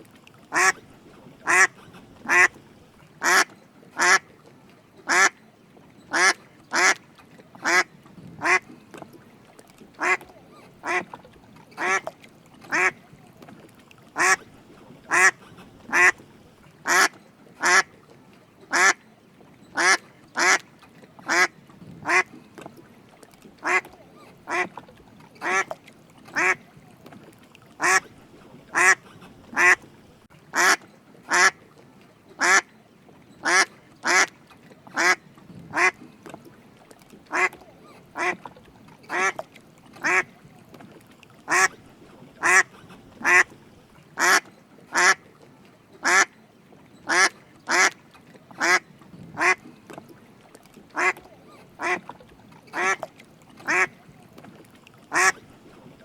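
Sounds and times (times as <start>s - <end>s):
mallard quacking: 0.5s - 0.8s, 1.4s - 2.6s, 3.2s - 4.3s, 5.1s - 5.4s, 6.1s - 7.0s, 7.6s - 8.7s, 10.0s - 11.2s, 11.8s - 12.1s, 12.7s - 13.0s, 14.2s - 14.5s, 15.1s - 16.2s, 16.8s - 17.9s, 18.7s - 19.0s, 19.8s - 20.6s, 21.2s - 22.3s, 23.6s - 24.8s, 25.4s - 26.6s, 27.8s - 28.1s, 28.7s - 29.8s, 30.5s - 31.6s, 32.4s - 32.7s, 33.4s - 34.3s, 34.9s - 36.0s, 37.3s - 37.6s, 38.2s - 38.5s, 39.1s - 39.4s, 40.0s - 40.3s, 41.5s - 41.8s, 42.4s - 43.5s, 44.2s - 45.2s, 46.0s - 46.3s, 47.1s - 48.0s, 48.6s - 48.8s, 49.4s - 49.6s, 51.0s - 51.2s, 51.8s - 52.1s, 52.7s - 54.0s, 55.1s - 55.4s.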